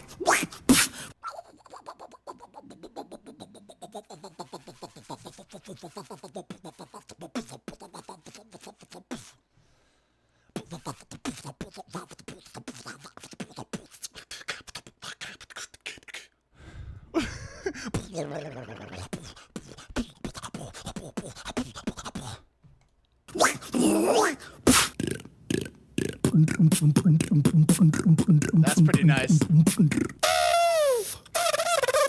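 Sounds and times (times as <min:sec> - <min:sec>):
beatboxer mouth clicks: 0:00.0 - 0:09.4, 0:10.6 - 0:16.4, 0:19.0 - 0:22.5, 0:23.3 - 0:32.0
fast vocal buzzing rhythm: 0:00.0 - 0:09.4, 0:10.6 - 0:16.3, 0:18.8 - 0:22.4, 0:23.3 - 0:32.0
vocal sound sliding in pitch: 0:23.3 - 0:32.0.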